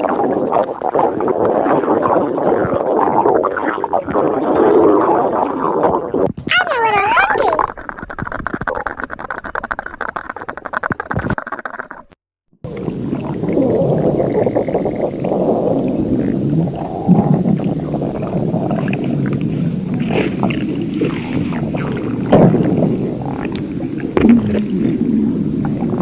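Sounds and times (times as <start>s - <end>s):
stomach growling: 0.0s - 6.4s, 7.1s - 26.0s.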